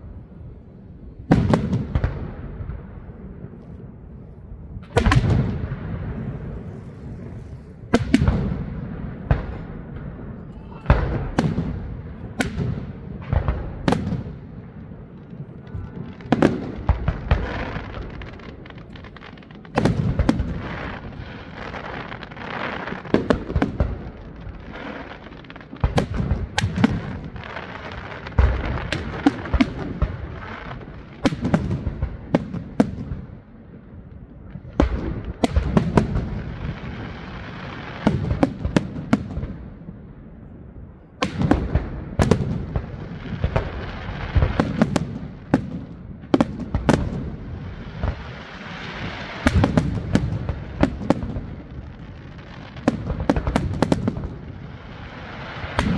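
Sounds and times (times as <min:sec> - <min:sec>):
fireworks crackling: 0:00.0 - 0:33.5, 0:34.2 - 0:39.7, 0:41.2 - 0:55.9
firework shells bursting: 0:04.9 - 0:08.6.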